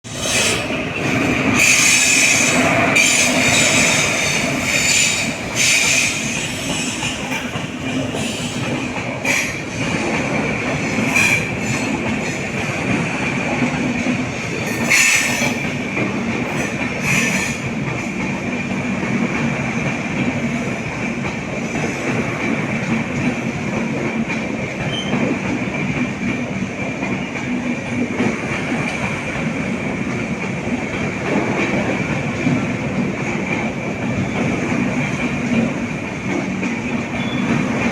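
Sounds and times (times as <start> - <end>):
train rumble on rails: 0.0 - 37.9
high wheel squeal: 0.1 - 0.8, 1.6 - 7.5, 37.1 - 37.6.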